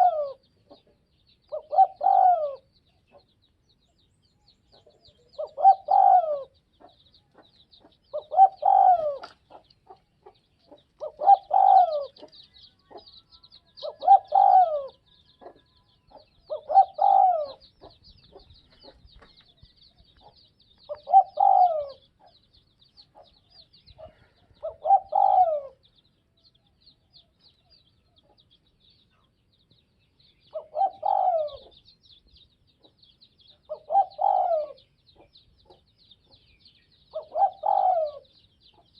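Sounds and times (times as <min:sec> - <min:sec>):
dove cooing: 0:00.0 - 0:03.2, 0:04.7 - 0:07.0, 0:07.8 - 0:19.0, 0:20.2 - 0:22.3, 0:23.1 - 0:25.9, 0:30.5 - 0:31.8, 0:33.7 - 0:35.8, 0:37.1 - 0:38.9.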